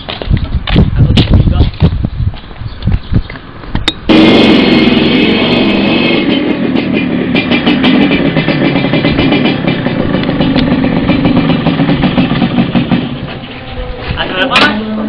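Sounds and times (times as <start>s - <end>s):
motorcycle engine running: 4.1s - 14.0s.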